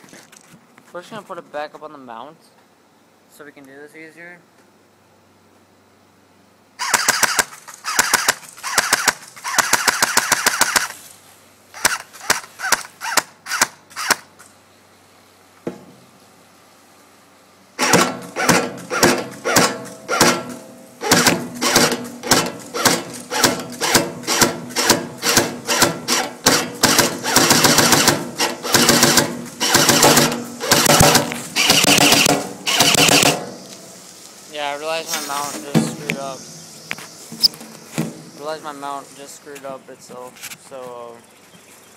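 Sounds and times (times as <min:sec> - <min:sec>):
airsoft rifle firing: 0:06.8 - 0:11.0, 0:11.8 - 0:14.3, 0:17.8 - 0:33.6.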